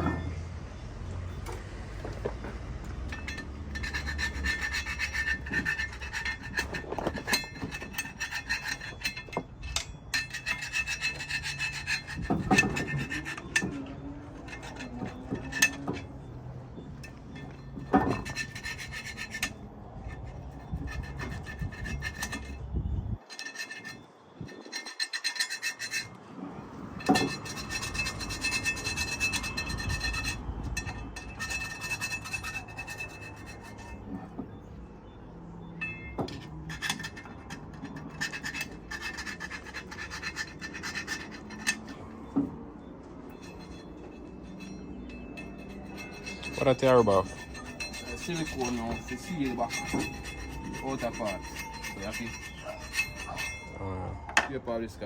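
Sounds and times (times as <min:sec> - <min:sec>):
hand scraping on metal: 0:02.0 - 0:16.2, 0:16.8 - 0:34.6, 0:35.8 - 0:54.4.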